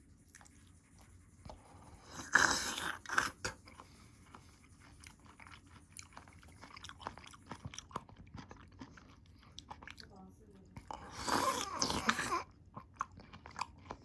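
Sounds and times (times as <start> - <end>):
chewing with crisp clicks: 0.3 - 14.0
person biting crunchy food: 11.1 - 12.4.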